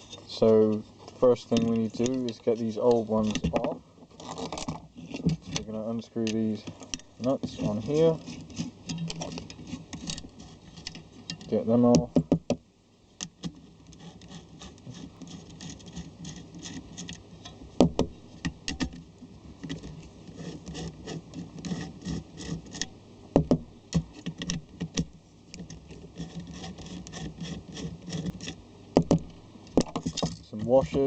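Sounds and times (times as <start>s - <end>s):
nuts unscrewing with light clicks: 0.2s - 12.0s.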